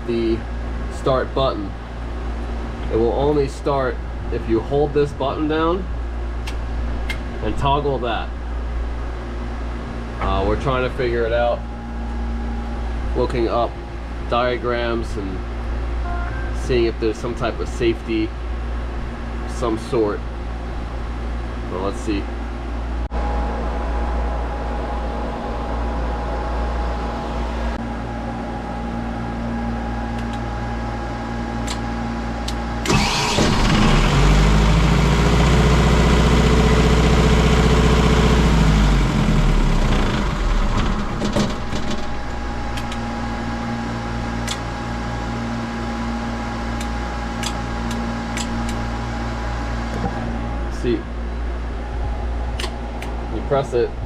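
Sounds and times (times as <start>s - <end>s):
machinery hum: 0.0s - 54.0s
engine turning over on starter: 32.8s - 42.3s
sharp clicks: 46.8s - 48.8s.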